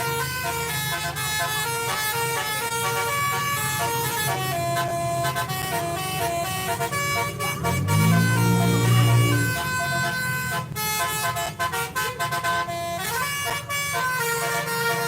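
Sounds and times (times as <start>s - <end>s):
multi-tone musical air horn: 0.0s - 15.0s
deep loud horn tone: 3.8s - 11.4s.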